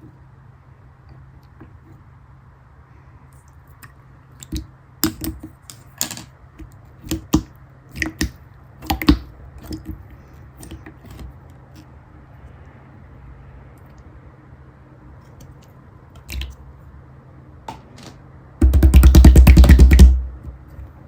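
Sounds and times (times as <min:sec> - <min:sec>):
slime clicking and squelching: 0:06.6 - 0:11.9, 0:15.3 - 0:16.6.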